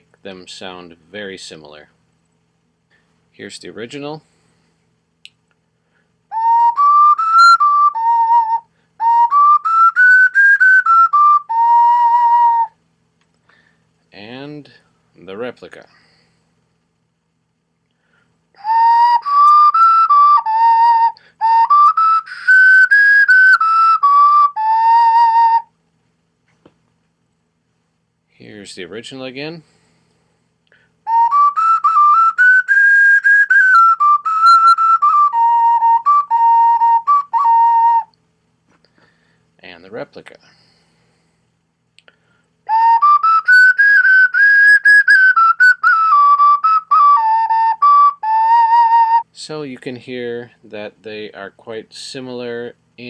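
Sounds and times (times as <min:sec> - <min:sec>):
ocarina playing whistle-like notes: 0:06.3 - 0:12.8, 0:18.6 - 0:25.7, 0:31.0 - 0:38.2, 0:42.6 - 0:49.3.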